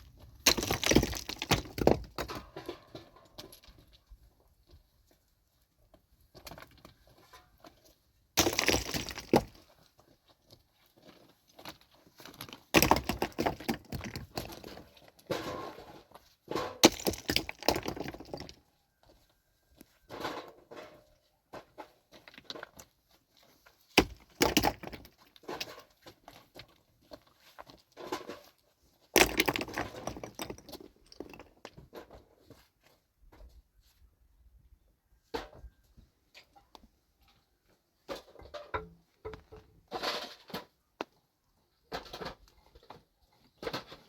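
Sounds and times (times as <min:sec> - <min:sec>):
cracking and crunching: 0:00.4 - 0:02.8, 0:08.4 - 0:09.6, 0:12.3 - 0:14.8, 0:16.7 - 0:18.6.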